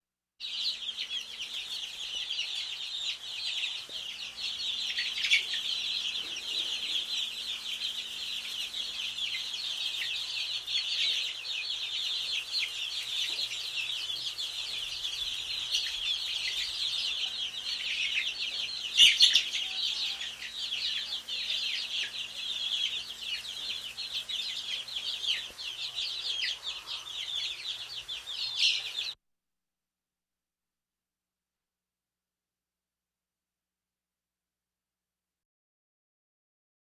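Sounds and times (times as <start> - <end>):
many small birds chirping: 0.4 - 29.2.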